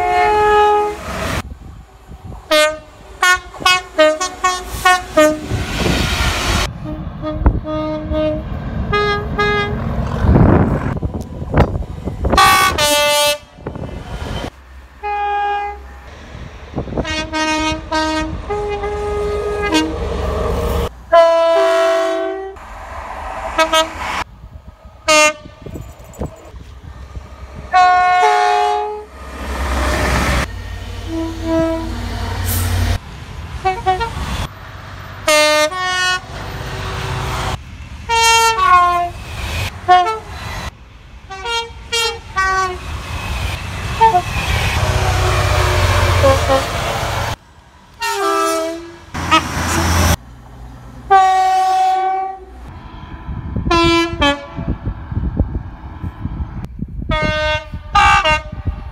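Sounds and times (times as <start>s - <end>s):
two-tone train horn blasts: 0.0s - 1.2s, 2.5s - 5.6s, 6.7s - 9.8s, 12.3s - 13.6s, 15.0s - 15.9s, 17.0s - 20.5s, 21.1s - 22.6s, 23.6s - 24.2s, 25.0s - 25.8s, 27.7s - 29.2s, 31.0s - 32.9s, 33.6s - 34.5s, 35.2s - 36.3s, 38.1s - 40.3s, 41.3s - 42.8s, 43.5s - 47.0s, 48.0s - 50.1s, 51.1s - 52.7s, 53.6s - 54.8s, 57.1s - 58.8s
low train rumble: 0.0s - 58.9s.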